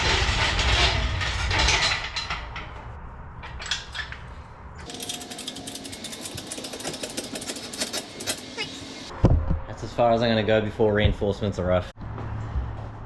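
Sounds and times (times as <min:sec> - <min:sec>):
engine crane ratcheting clicks: 0:04.8 - 0:09.1.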